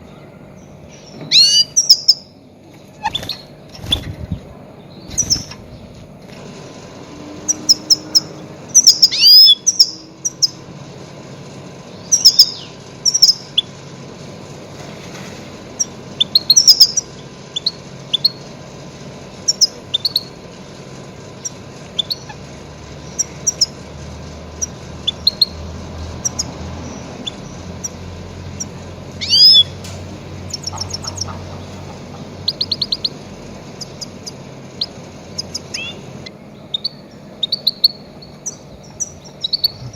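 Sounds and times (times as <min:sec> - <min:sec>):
goldfinch chirps and twittering: 0:00.6 - 0:02.3, 0:04.9 - 0:05.6, 0:07.4 - 0:10.6, 0:11.9 - 0:13.7, 0:15.8 - 0:18.5, 0:19.4 - 0:20.4, 0:21.4 - 0:23.8, 0:24.5 - 0:29.8, 0:30.4 - 0:39.9.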